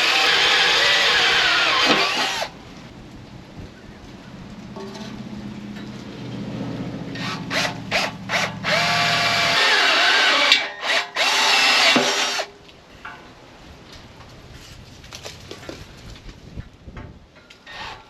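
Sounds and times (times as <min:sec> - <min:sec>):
power drill drilling through steel: 0:00.0 - 0:02.5, 0:07.2 - 0:12.5.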